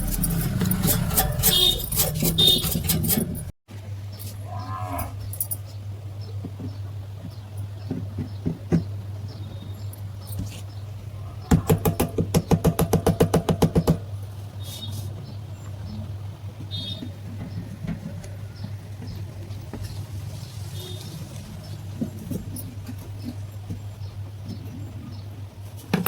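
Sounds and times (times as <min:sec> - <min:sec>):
electric fan motor humming: 0:00.0 - 0:03.5.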